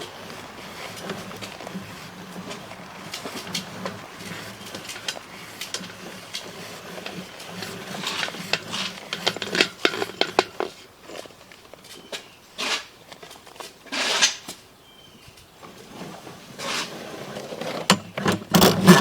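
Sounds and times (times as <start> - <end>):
hard objects clicking and rattling: 0.0 - 10.8, 17.8 - 19.0.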